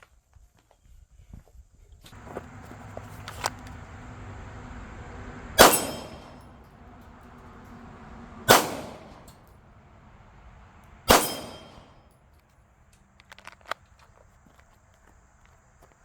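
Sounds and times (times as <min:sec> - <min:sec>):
pistol shots: 0:02.2 - 0:12.1.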